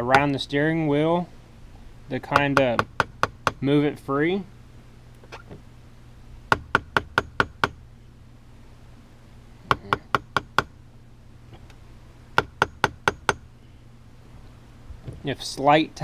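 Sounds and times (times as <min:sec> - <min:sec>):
hammer tapping on metal: 0:06.5 - 0:07.8, 0:09.7 - 0:10.7, 0:12.4 - 0:13.4.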